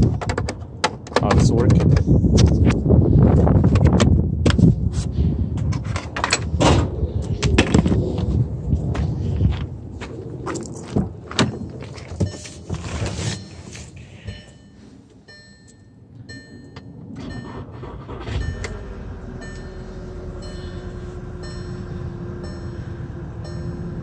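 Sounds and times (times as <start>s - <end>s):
knocks and clunks: 0.0s - 4.7s, 10.8s - 13.2s
car engine starting and idling: 10.8s - 24.0s
high electronic warning tones: 11.6s - 24.0s.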